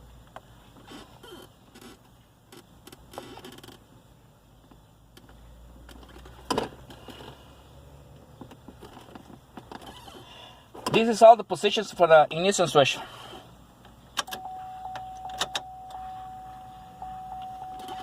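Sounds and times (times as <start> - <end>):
low hum: 14.3 - 18.0.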